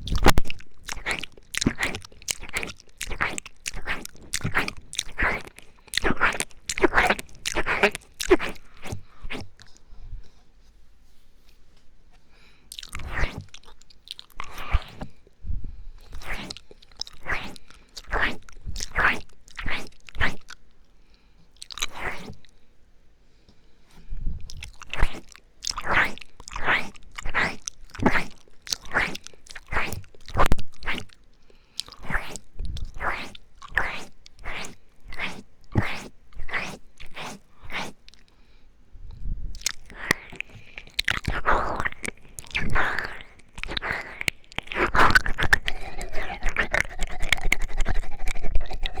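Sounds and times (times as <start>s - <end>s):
wet mouth smacking and licking: 0.0s - 9.8s, 12.7s - 15.2s, 16.0s - 20.7s, 21.6s - 22.5s, 24.5s - 38.3s, 39.6s - 49.0s.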